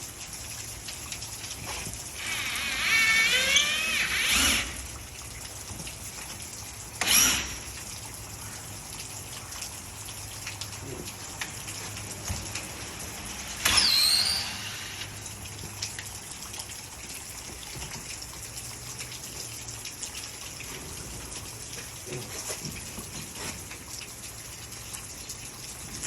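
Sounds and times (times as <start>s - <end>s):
steady rain falling: 0.0s - 26.0s
short whining sounds: 13.6s - 15.2s.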